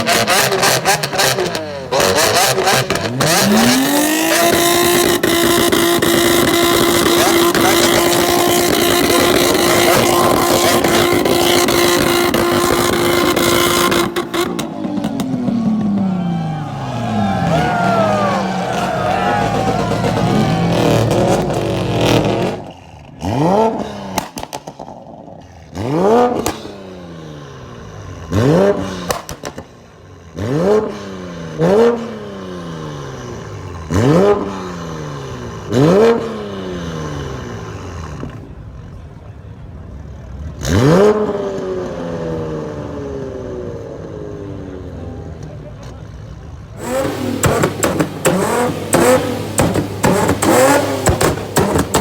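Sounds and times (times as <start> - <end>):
car engine revving: 0.0 - 24.6, 46.6 - 52.0
exhaust pops and crackles: 0.1 - 22.8, 46.8 - 52.0.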